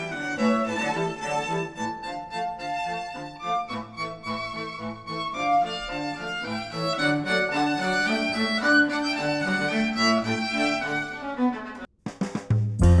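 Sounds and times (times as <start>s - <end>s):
bowed strings sustained notes: 0.0s - 11.9s
music with strong bass notes: 12.8s - 13.0s.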